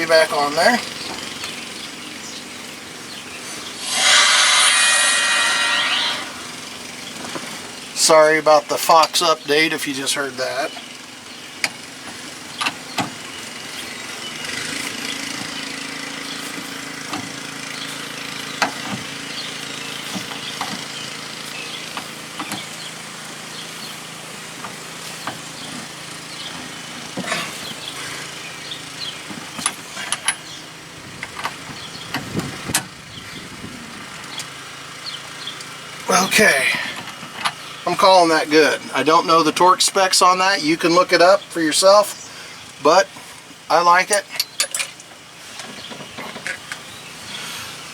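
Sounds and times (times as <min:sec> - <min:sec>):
steady low hum: 0:03.6 - 0:07.2.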